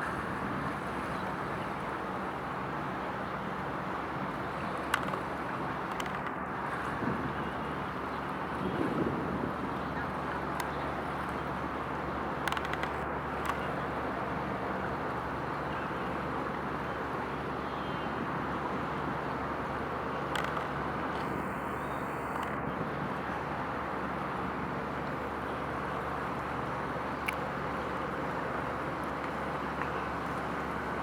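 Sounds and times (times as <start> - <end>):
outdoor rumble and hiss: 0.0 - 31.0
faint short clicks: 4.6 - 6.8, 12.4 - 13.8, 20.2 - 22.6, 27.2 - 27.5.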